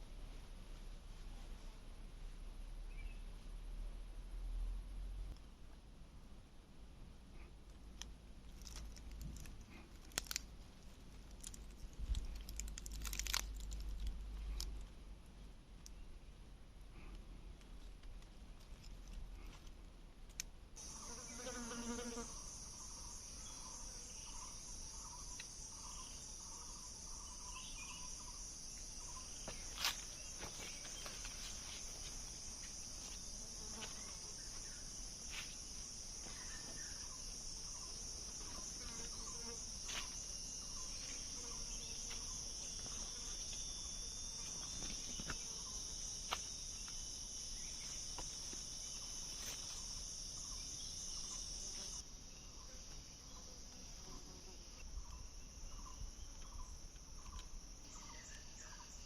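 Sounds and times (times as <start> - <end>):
high-pitched insect chorus: 20.8 - 59.0.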